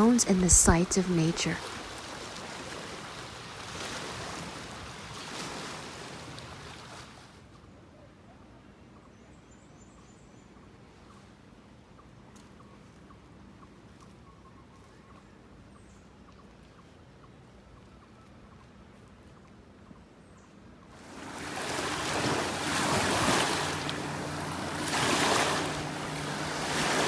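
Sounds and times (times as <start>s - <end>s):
rushing water: 0.0s - 7.3s, 21.0s - 27.0s.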